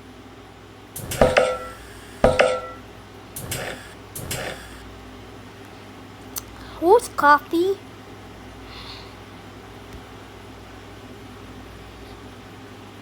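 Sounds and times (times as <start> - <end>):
hard objects knocking: 1.0 - 2.8, 3.4 - 4.8.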